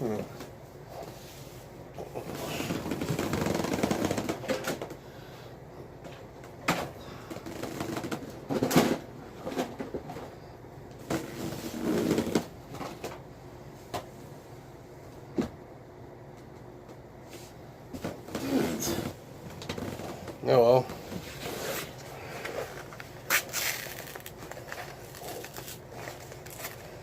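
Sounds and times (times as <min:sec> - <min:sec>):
cardboard rustling and scraping: 0:11.0 - 0:12.5, 0:20.9 - 0:27.0.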